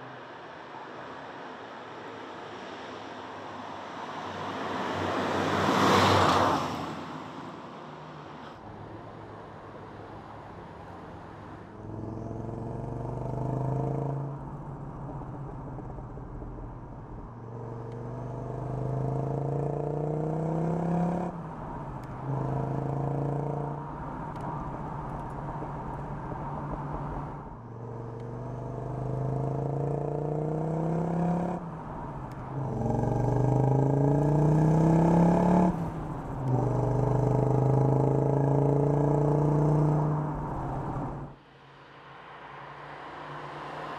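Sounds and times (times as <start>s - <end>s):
car engine accelerating through gears: 11.7s - 41.4s.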